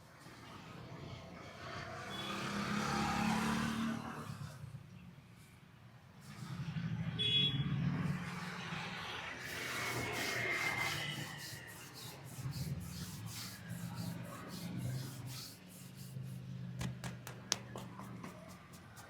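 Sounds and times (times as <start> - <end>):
hands rubbing and patting head: 9.6 - 19.0.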